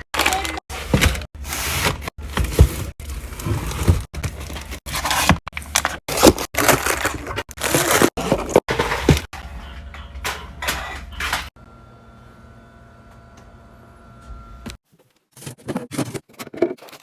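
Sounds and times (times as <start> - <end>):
items clattering into containers: 0.0 - 11.5, 15.0 - 17.0.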